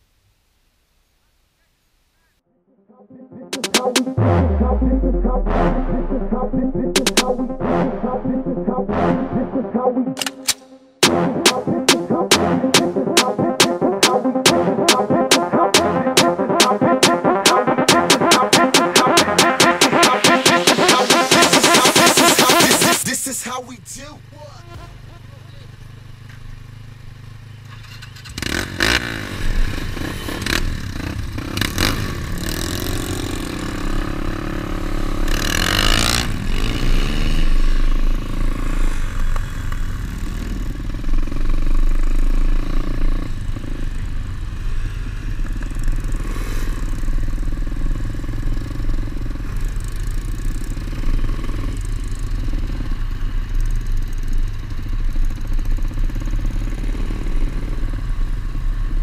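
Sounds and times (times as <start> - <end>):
pit bike engines revving: 23.2 - 58.7.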